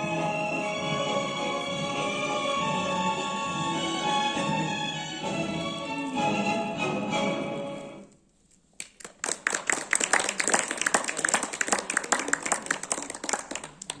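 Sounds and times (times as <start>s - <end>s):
music: 0.0s - 8.2s
audience applause: 8.8s - 14.0s.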